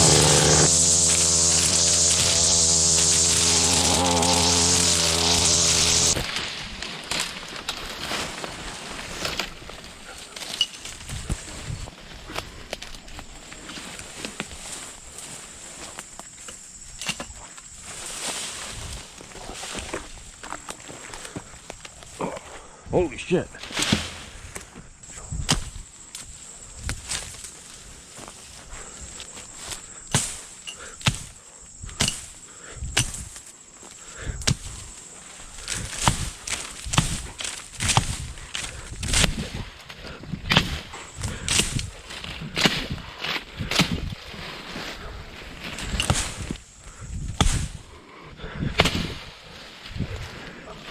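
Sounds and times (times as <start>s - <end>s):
small engine yard tool buzzing: 0.0s - 6.3s
brush and debris rustling: 0.0s - 22.2s, 23.3s - 47.9s
axe chopping wood: 48.8s - 49.2s.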